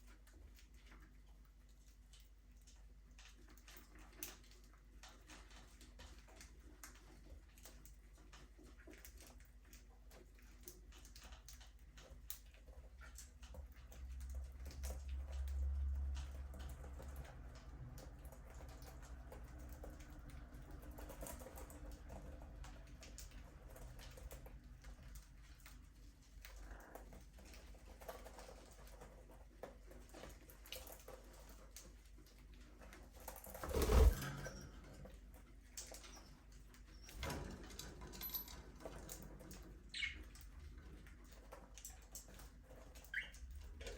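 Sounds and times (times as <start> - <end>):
small clicks and taps: 0.0 - 33.3
budgerigars chirping faintly: 39.9 - 40.4.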